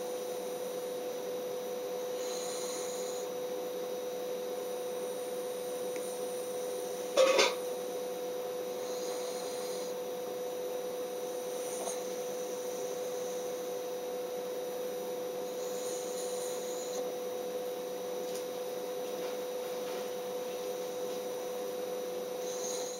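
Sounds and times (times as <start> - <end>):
steady hum: 0.0 - 22.9
pet snoring lightly: 2.0 - 3.4, 8.7 - 10.1, 11.3 - 13.8, 15.4 - 17.2, 22.3 - 22.9.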